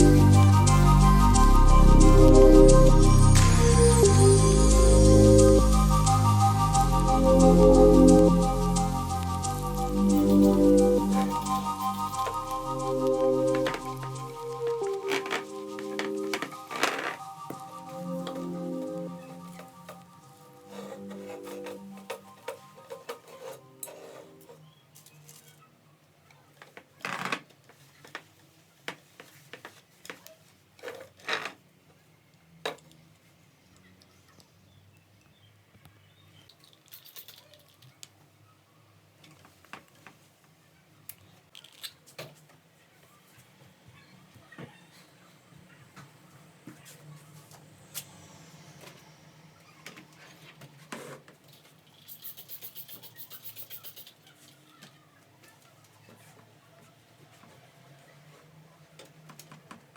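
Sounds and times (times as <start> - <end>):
rhythmic scraping: 0.0 - 24.5
knocks and rustles of handling: 26.4 - 32.0.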